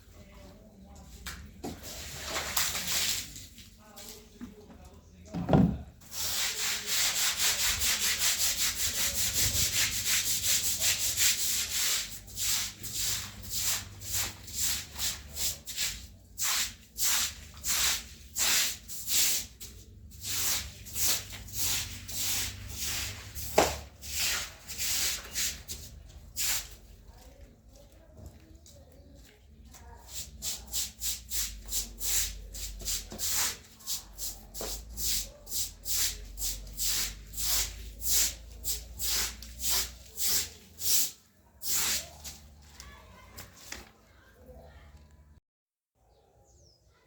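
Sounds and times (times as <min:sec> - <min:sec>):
stiff brush scrubbing floor: 0:01.6 - 0:04.7, 0:05.4 - 0:28.1, 0:29.2 - 0:43.8.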